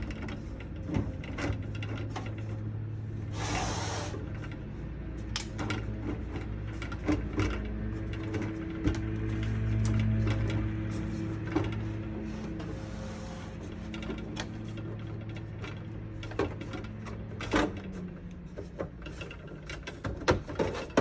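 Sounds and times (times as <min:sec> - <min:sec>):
short scraping rush: 0:03.3 - 0:04.2.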